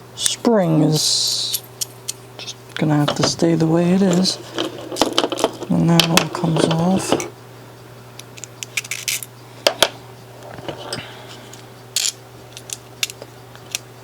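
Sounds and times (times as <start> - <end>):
steady low hum: 0.0 - 14.0
small metal parts clicking: 4.1 - 7.2, 8.6 - 9.3, 12.0 - 13.8.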